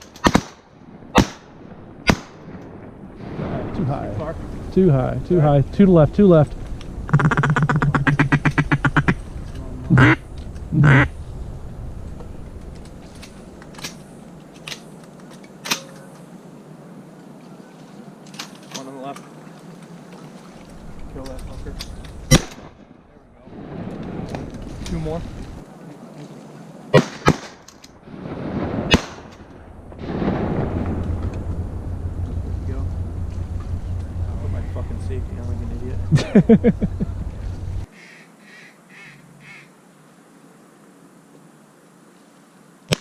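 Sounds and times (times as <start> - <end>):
shotgun shots: 0.1 - 2.6, 22.3 - 22.9, 26.9 - 27.7, 28.7 - 29.4
duck quack: 7.1 - 9.2, 9.9 - 10.2, 10.8 - 11.1, 38.0 - 39.7.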